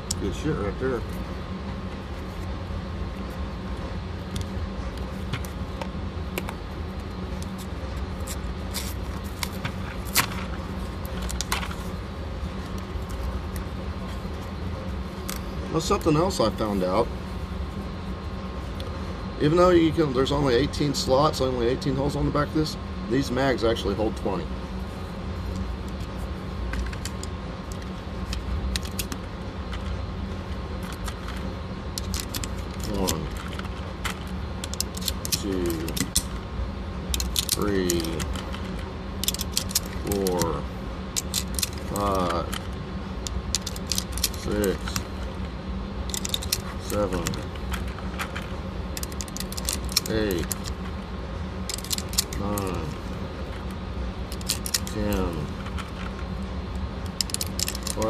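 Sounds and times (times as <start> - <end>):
low background rumble: 0.0 - 58.0
handling clicks and rattles: 26.7 - 36.4, 37.1 - 51.0, 51.6 - 58.0
pistol magazine rattling: 39.2 - 40.5, 43.2 - 45.0, 46.1 - 46.7, 47.3 - 50.8, 51.7 - 52.4, 54.3 - 55.0, 57.1 - 58.0.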